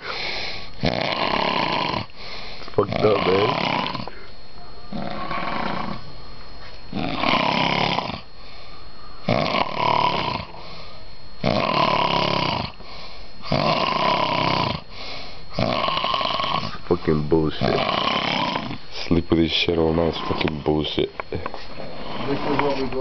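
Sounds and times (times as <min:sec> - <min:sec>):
man snoring: 0:00.0 - 0:04.2, 0:04.9 - 0:06.0, 0:06.9 - 0:08.3, 0:09.2 - 0:16.8, 0:17.4 - 0:18.8, 0:20.0 - 0:20.8
quiet breathing: 0:02.0 - 0:02.8, 0:08.3 - 0:09.3, 0:10.4 - 0:11.2, 0:12.7 - 0:13.5, 0:14.8 - 0:15.6.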